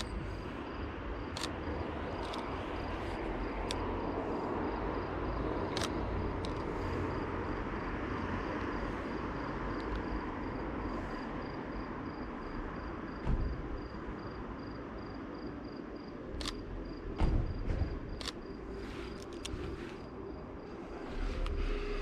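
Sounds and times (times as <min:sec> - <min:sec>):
low rumble of traffic: 0:00.0 - 0:22.0
dull thump: 0:13.2 - 0:13.6, 0:17.2 - 0:18.1.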